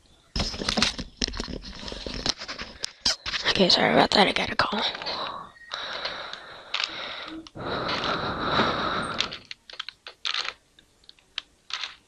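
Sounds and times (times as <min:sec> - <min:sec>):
puzzle cube rustling and scraping: 0:00.4 - 0:03.6, 0:06.7 - 0:08.2, 0:09.0 - 0:12.0
sharp plastic clicks: 0:05.0 - 0:08.2, 0:09.1 - 0:12.0.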